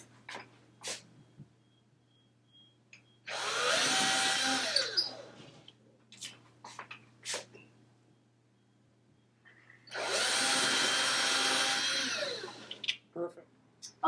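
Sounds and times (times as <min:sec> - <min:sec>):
power drill drilling into wall: 0:03.3 - 0:05.3, 0:09.9 - 0:12.8.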